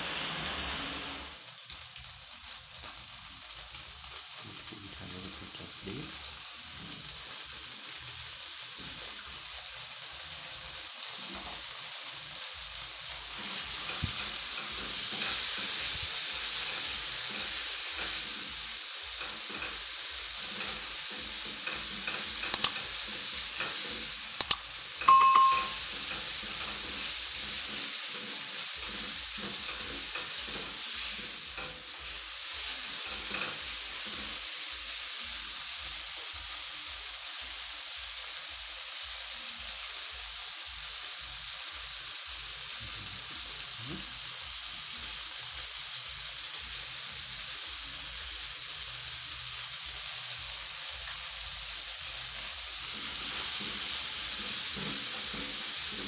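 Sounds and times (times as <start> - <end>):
food sizzling in a pan: 0.0 - 56.0
brief ringing ding: 25.0 - 25.9.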